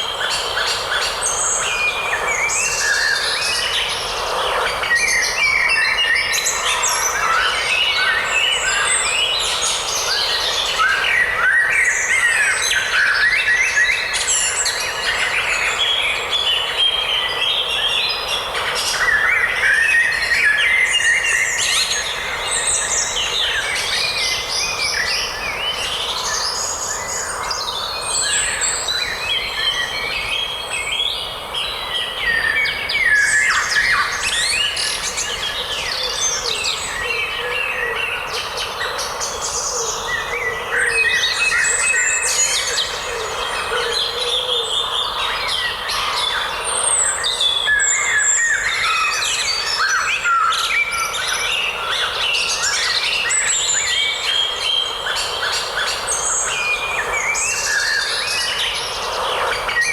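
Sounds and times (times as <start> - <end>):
chorus of birds singing: 0.0 - 59.9.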